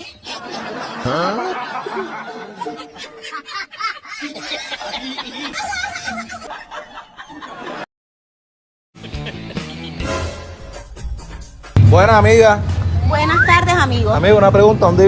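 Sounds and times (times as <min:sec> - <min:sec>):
laughter: 0:00.0 - 0:07.9, 0:09.0 - 0:10.0.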